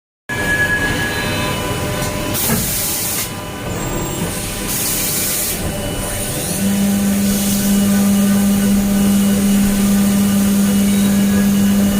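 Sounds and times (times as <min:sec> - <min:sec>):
cnc machine whining: 0:00.3 - 0:11.9
hiss: 0:02.4 - 0:03.3.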